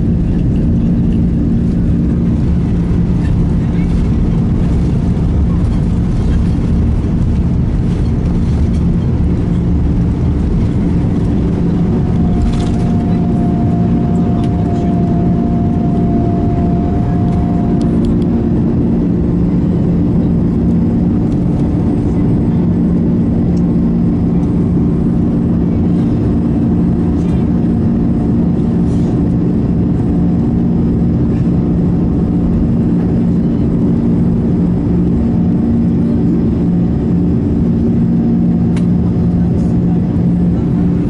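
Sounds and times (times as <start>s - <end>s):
jet engines rumbling in cabin: 0.0s - 41.0s
steady higher tone: 8.9s - 21.2s.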